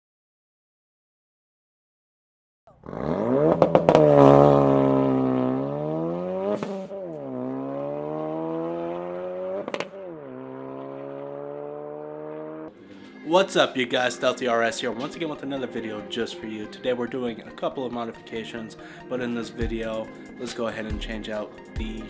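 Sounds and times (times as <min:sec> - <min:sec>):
exhaust cracks: 0:02.7 - 0:11.8
car engine accelerating through gears: 0:02.7 - 0:12.7.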